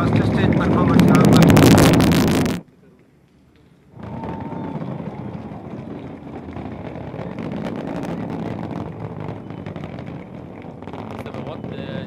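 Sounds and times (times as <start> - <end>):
rocket boosters roaring: 0.0 - 2.6, 4.0 - 12.0.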